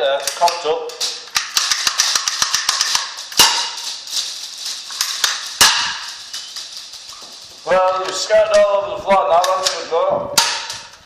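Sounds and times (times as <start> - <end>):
pellets clicking on hard floor: 0.3 - 8.7.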